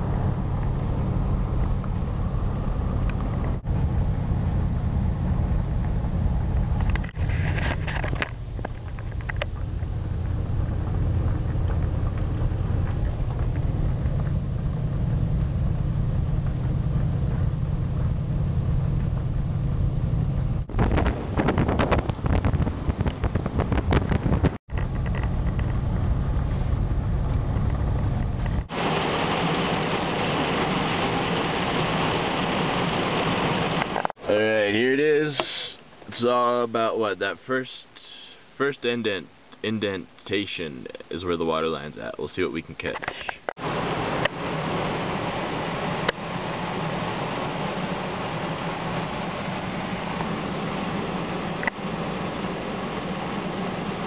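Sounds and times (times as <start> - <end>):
car interior road rumble: 0.0 - 34.0
rain hiss: 28.6 - 34.2, 34.9 - 36.9, 43.6 - 54.0.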